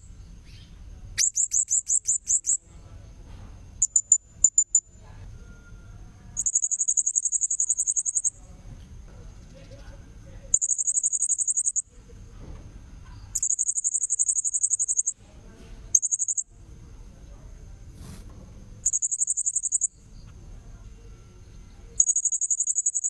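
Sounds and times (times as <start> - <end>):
faint steady high tone: 3.8 - 8.5, 9.5 - 12.0, 13.0 - 15.2, 15.9 - 17.5, 18.8 - 23.0.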